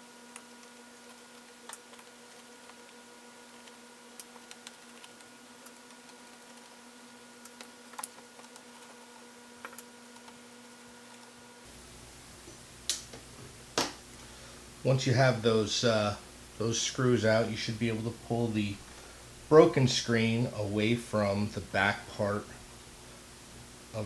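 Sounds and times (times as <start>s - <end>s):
faint electrical hum: 0.0s - 24.0s.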